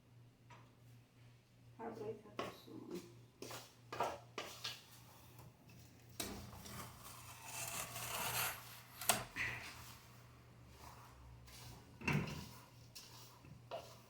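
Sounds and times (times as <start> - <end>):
rubbing and scraping handling: 4.4 - 14.0.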